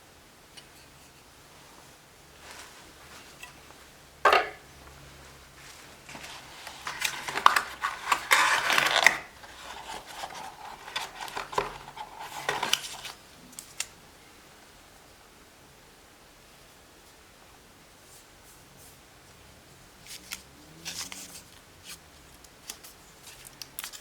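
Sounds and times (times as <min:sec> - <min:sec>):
parts clattering and scraping: 0:02.6 - 0:04.7, 0:05.7 - 0:13.2.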